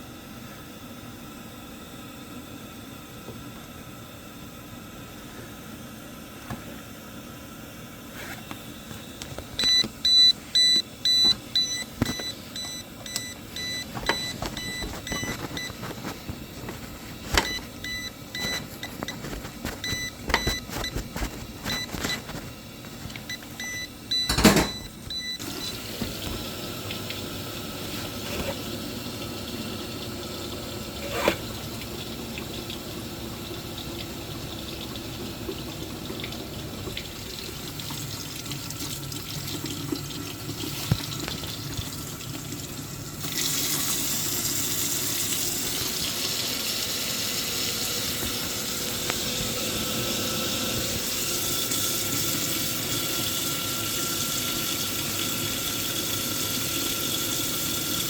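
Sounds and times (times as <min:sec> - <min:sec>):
water rushing in pipes: 0:24.9 - 0:58.0.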